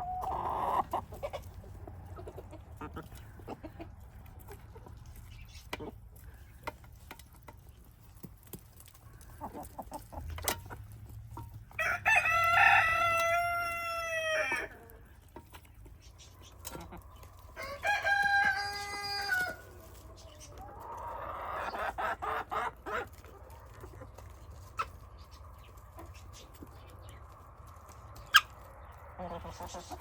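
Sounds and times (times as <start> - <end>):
chickens clucking: 0.0 - 30.0
rooster crowing: 11.8 - 14.6, 17.6 - 19.6.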